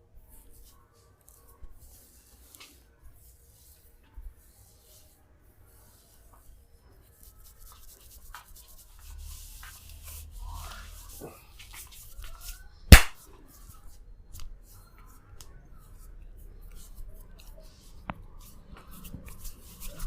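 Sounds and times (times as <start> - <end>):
hands rubbing skin and hair: 0.4 - 3.9, 5.8 - 13.2
loud sharp impact: 12.9 - 13.2.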